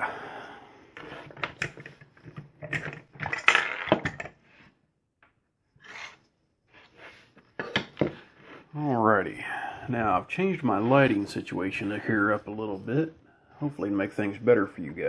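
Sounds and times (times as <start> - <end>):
faint soft rustle: 9.9 - 15.0.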